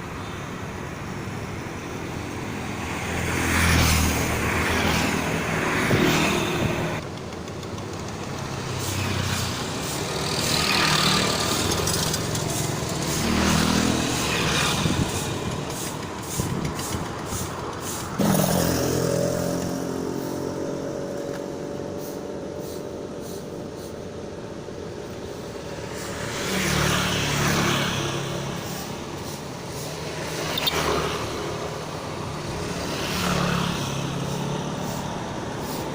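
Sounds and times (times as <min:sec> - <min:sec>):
road traffic passing: 0:00.0 - 0:35.9
heavy vehicle engine passing: 0:08.1 - 0:35.9.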